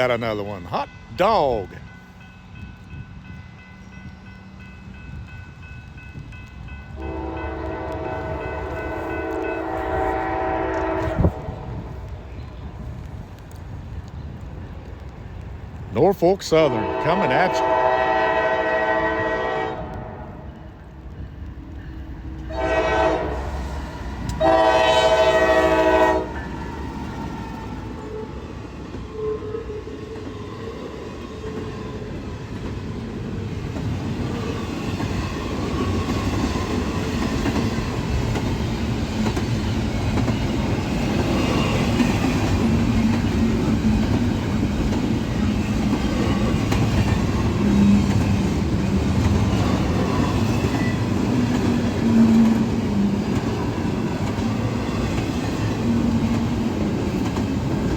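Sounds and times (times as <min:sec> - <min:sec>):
diesel locomotive rumbling: 0:00.0 - 0:57.9
locomotive air horn: 0:07.0 - 0:11.6, 0:16.7 - 0:20.4, 0:22.5 - 0:23.6, 0:24.4 - 0:26.4
wheels clacking on rail joints: 0:32.3 - 0:57.9.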